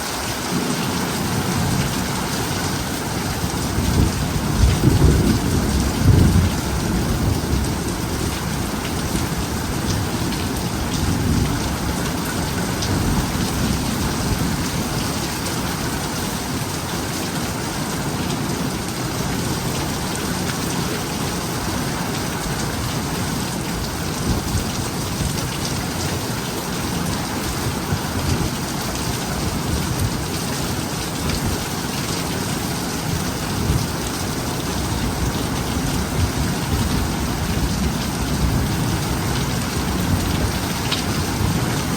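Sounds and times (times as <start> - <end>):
heavy rain pouring: 0.0 - 41.9
low rumble of thunder: 0.5 - 16.6, 33.1 - 41.9.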